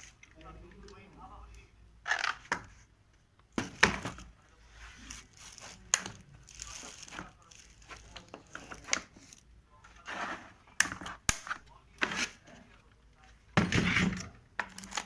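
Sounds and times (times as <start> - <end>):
packaging crinkling and rustling: 5.0 - 9.4.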